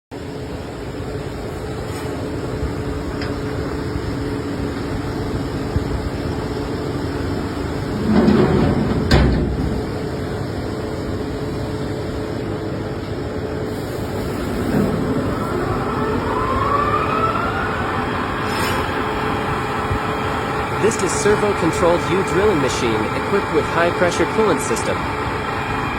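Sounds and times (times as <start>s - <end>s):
drilling machine humming: 14.4s - 25.9s.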